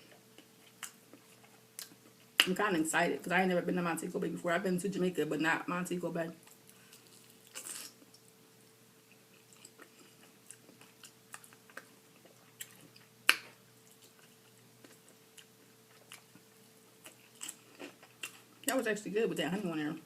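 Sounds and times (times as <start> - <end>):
close chewing and mouth sounds: 0.0 - 2.5, 9.1 - 18.7.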